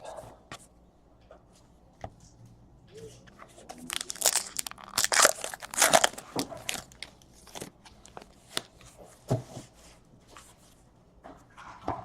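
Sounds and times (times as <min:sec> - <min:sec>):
cards rustling: 0:03.5 - 0:08.9
wrapper crinkling and tearing: 0:03.8 - 0:08.7.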